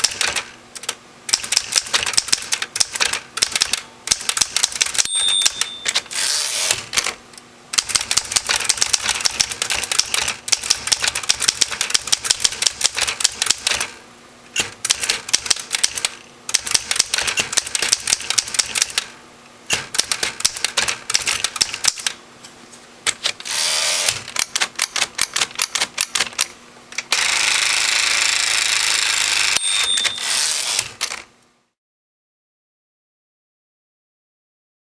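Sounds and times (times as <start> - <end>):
typewriter key strikes: 0.0 - 6.1, 7.8 - 13.9, 19.7 - 22.1, 29.6 - 31.2
typewriter carriage rasping: 1.3 - 7.1, 28.8 - 31.2
typewriter bell ding: 5.0 - 6.1, 29.6 - 30.6.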